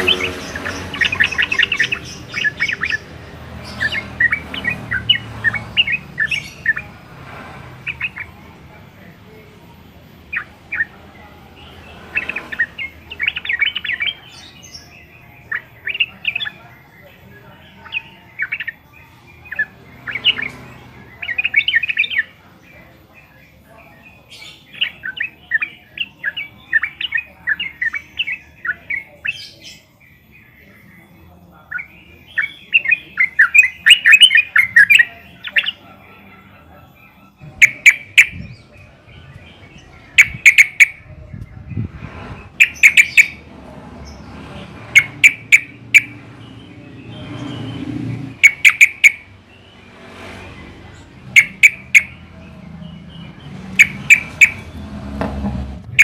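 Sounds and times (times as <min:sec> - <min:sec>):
bird calling: 0:00.0 - 0:07.1, 0:07.8 - 0:08.4, 0:10.3 - 0:22.9, 0:30.6 - 0:41.6, 0:42.4 - 0:55.2.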